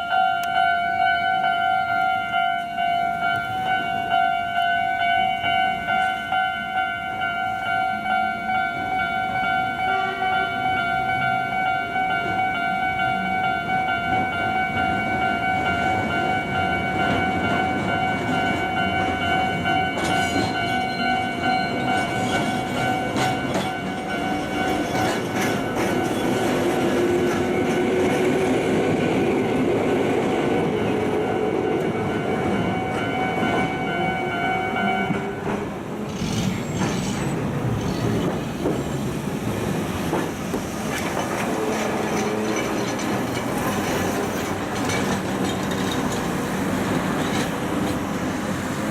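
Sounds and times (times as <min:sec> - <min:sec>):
level-crossing alarm bell ringing: 0:00.0 - 0:29.6, 0:30.6 - 0:35.5
train rail clatter: 0:13.6 - 0:48.9.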